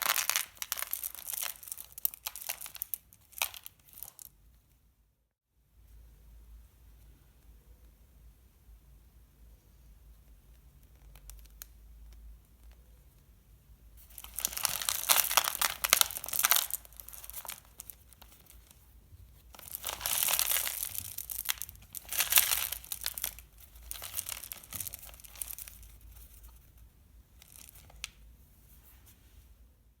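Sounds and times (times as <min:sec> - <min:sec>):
plastic packaging crinkling: 0:00.0 - 0:04.3, 0:14.0 - 0:18.8, 0:19.5 - 0:26.4, 0:27.4 - 0:28.2.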